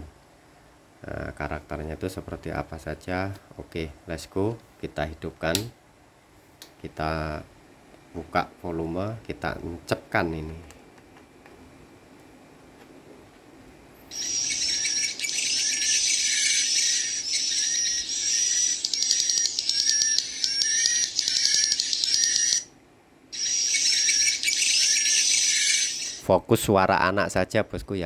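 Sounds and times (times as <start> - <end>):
adult swiftlet calls: 14.1 - 22.7, 23.4 - 26.2
swiftlet chicks chittering: 14.1 - 22.7, 23.4 - 26.2.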